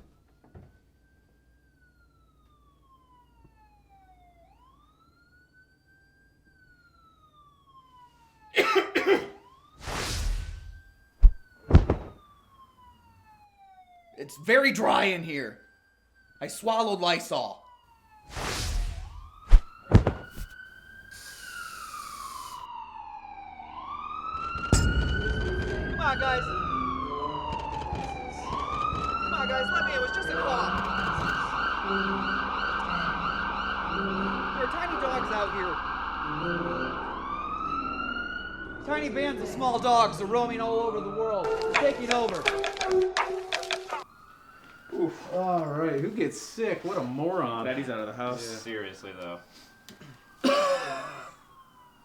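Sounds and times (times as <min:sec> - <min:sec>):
faint siren wailing: 0:00.0 - 0:52.0
person coughing loudly: 0:08.6 - 0:09.4, 0:50.4 - 0:51.4.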